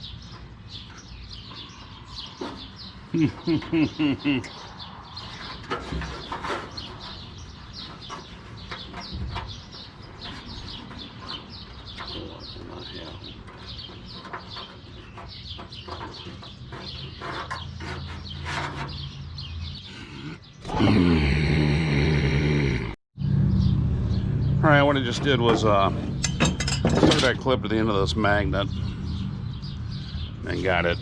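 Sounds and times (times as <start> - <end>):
birds chirping: 0.0 - 31.0.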